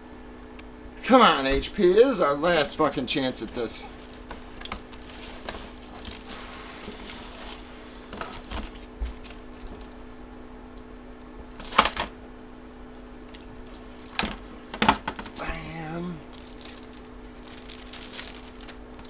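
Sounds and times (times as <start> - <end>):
packaging crinkling: 3.3 - 10.1, 11.4 - 12.2, 13.0 - 19.0.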